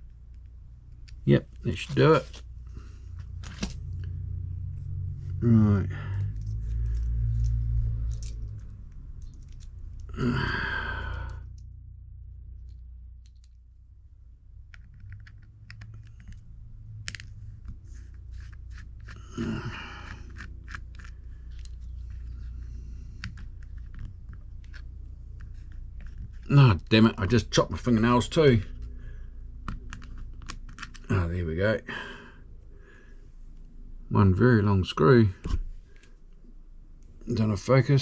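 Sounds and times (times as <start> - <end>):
low steady hum: 0.0 - 38.0
screwdriver clicks and taps: 13.2 - 13.6.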